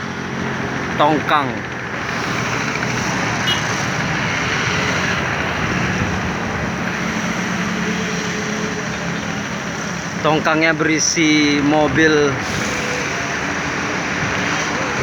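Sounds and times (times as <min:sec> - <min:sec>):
engine and traffic drone: 0:00.0 - 0:15.0.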